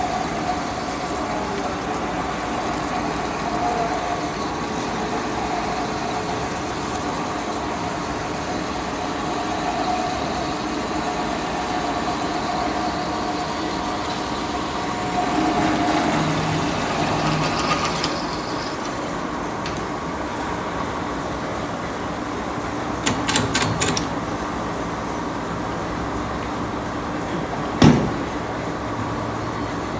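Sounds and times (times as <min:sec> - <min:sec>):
boring machine motor humming: 0:09.2 - 0:20.6.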